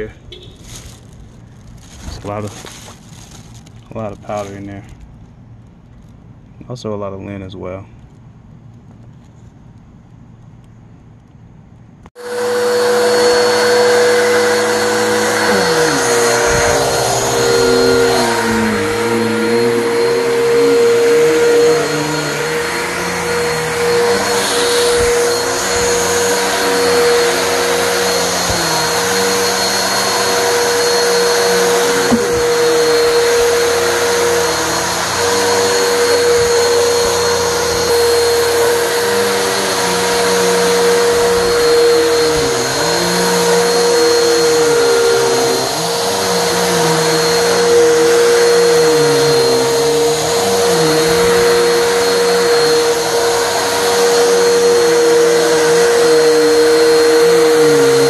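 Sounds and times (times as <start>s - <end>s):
vacuum cleaner on carpet: 12.2s - 58.0s.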